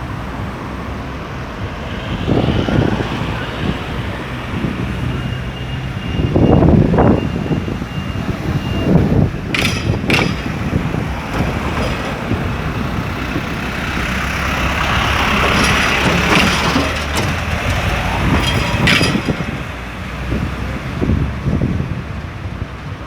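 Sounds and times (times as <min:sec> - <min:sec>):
sharp clicks or knocks: 0:09.5 - 0:13.5, 0:18.4 - 0:19.7
motor vehicle passing: 0:09.6 - 0:22.0.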